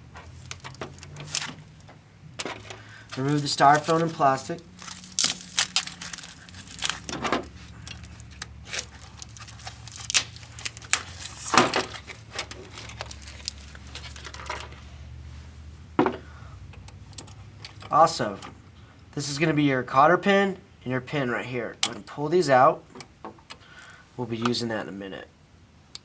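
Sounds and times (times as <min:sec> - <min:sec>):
plastic wrapping crinkling: 0:03.0 - 0:14.8.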